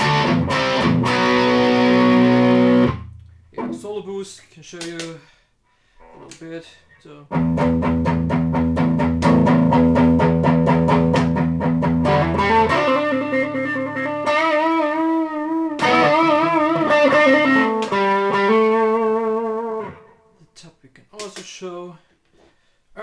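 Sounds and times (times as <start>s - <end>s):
distorted electric guitar: 0.0s - 3.9s, 7.3s - 20.1s.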